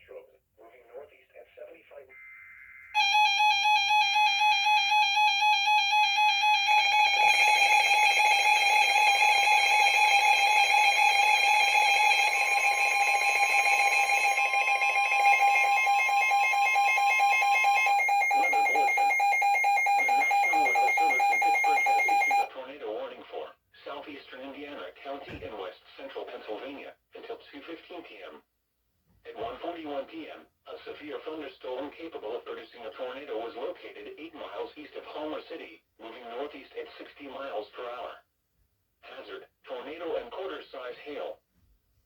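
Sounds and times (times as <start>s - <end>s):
higher steady tone: 2.1s - 5.1s, 6.1s - 22.5s
warbling electronic alarm tone: 2.1s - 22.5s.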